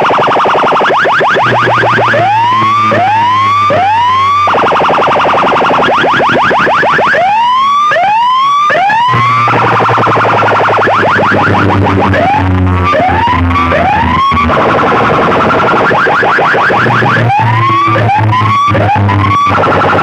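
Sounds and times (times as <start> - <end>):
electronic siren chirps and whoops: 0.0 - 20.0
deep bass tone: 1.4 - 4.6, 9.0 - 15.9, 16.8 - 20.0.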